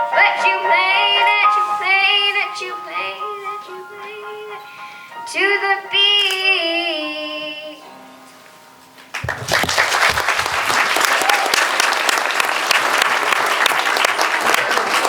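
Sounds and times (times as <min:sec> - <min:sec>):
audience applause: 0:09.1 - 0:15.0.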